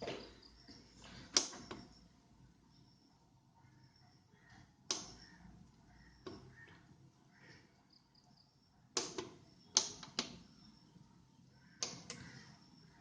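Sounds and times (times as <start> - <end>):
sharp clicks: 1.3 - 2.0, 4.9 - 5.3, 9.0 - 10.5, 11.8 - 12.4.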